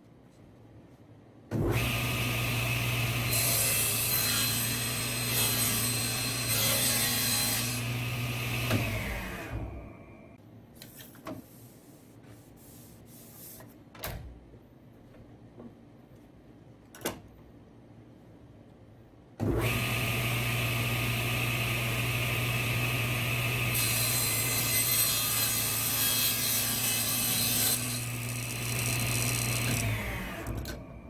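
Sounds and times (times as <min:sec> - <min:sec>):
table saw motor: 0:01.6 - 0:09.9, 0:19.5 - 0:30.9
saw blade cutting wood: 0:01.8 - 0:09.5.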